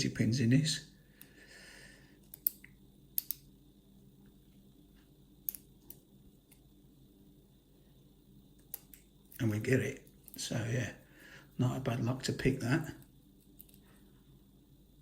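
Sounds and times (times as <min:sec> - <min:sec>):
lock pick metallic clicks: 0:02.3 - 0:03.5.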